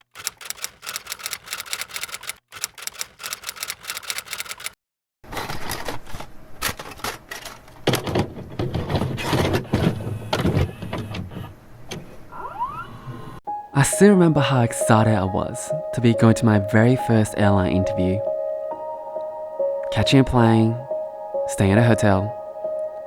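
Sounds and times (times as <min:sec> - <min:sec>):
rapid even clicking: 0:00.0 - 0:04.8.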